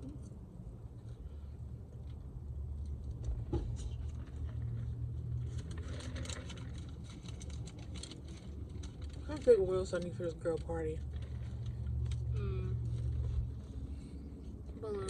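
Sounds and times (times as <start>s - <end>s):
car engine and road noise: 0.0s - 15.0s
crackling rustle: 3.8s - 14.1s.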